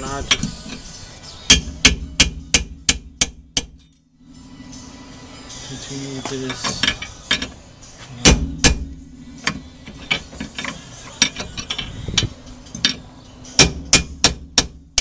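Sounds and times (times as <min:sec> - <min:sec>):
metal-on-metal strikes: 0:08.2 - 0:10.5.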